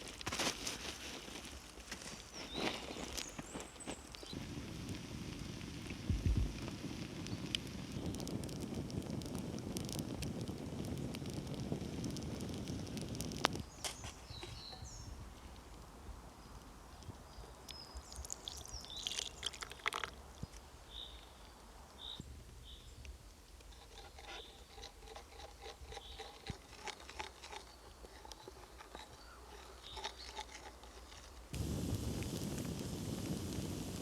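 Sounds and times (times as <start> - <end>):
food crunching being cut: 23.7 - 31.6.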